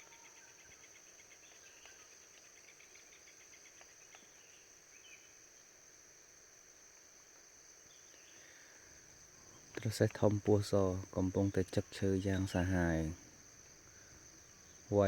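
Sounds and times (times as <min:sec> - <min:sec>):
insect drone: 0:00.0 - 0:15.0
pulsed insect trill: 0:08.8 - 0:15.0.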